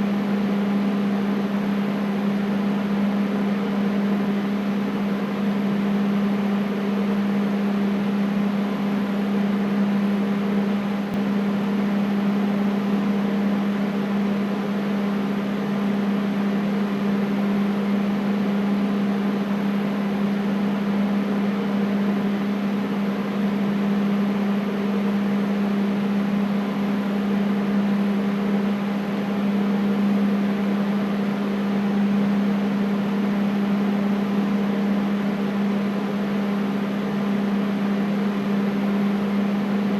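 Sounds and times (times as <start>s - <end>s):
air conditioner humming: 0.0s - 39.9s.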